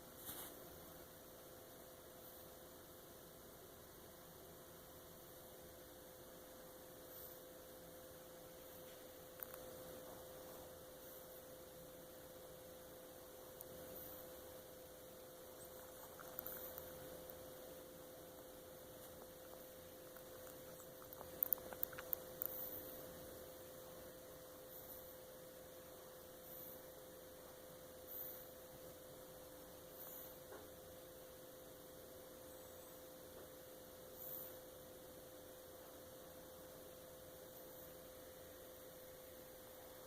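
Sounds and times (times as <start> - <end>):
faint steady hum: 0.0 - 40.0
puppy sucking and smacking noises: 15.6 - 17.4, 19.0 - 22.9.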